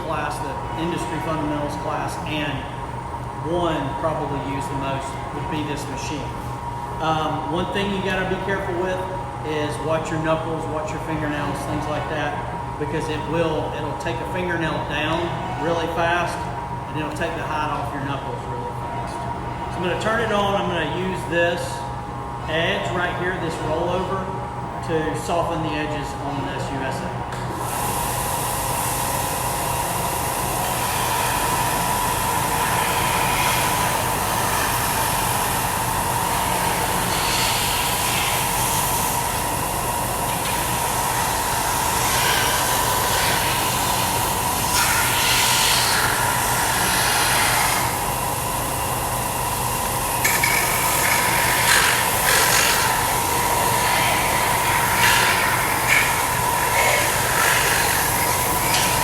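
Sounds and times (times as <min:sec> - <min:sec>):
belt sander motor whine: 0:29.4 - 0:59.0
rasping sanding of wood: 0:50.2 - 0:59.0.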